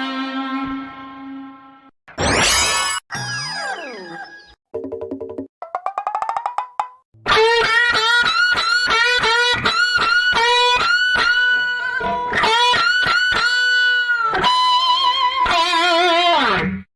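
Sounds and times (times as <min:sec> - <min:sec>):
guitar riff: 0:07.2 - 0:16.8.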